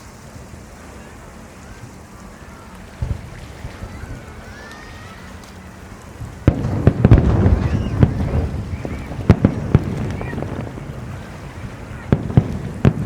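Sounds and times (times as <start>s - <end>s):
fireworks bangs and cracks: 3.0s - 3.3s, 6.2s - 13.0s.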